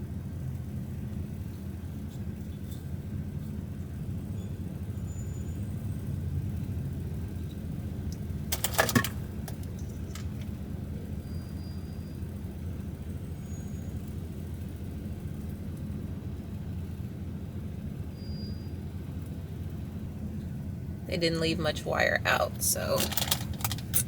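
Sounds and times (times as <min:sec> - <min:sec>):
vehicle engine rumbling: 0:00.0 - 0:24.0
rattle of sharp clicks: 0:08.5 - 0:10.6, 0:23.0 - 0:24.0.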